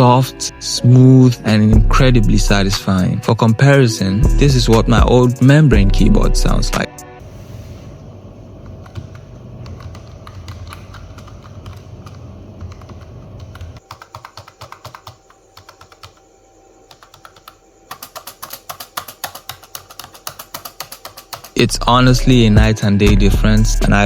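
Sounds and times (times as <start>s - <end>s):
fast keyboard typing: 8.7s - 16.2s, 16.9s - 21.6s.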